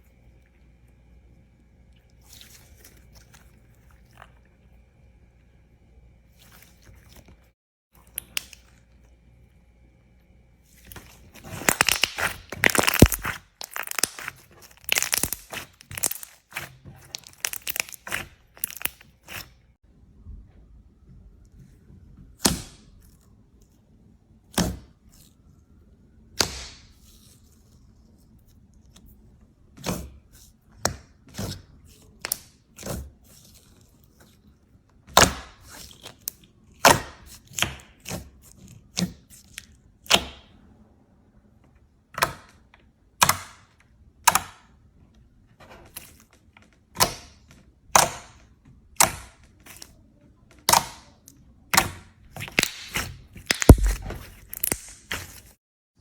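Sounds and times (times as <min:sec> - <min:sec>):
slime crackling and popping: 0:10.9 - 0:19.5, 0:51.7 - 0:55.6.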